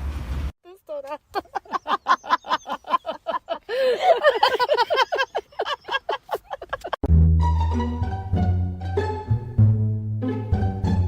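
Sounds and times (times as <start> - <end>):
hearty laughter: 1.3 - 7.1
plucked and bowed string music: 7.1 - 11.0.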